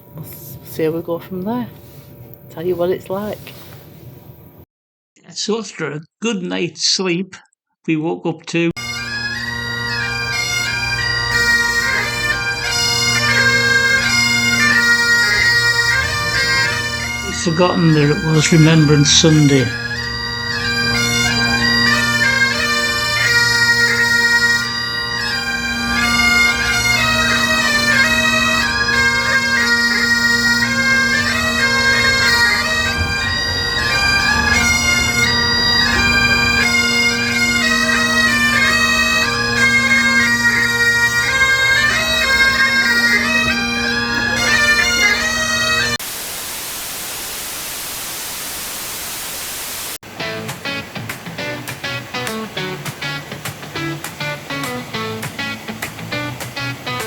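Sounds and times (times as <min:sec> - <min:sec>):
bagpipes playing: 0:08.8 - 0:46.1, 0:49.2 - 0:57.0
steady hiss: 0:46.0 - 0:57.0.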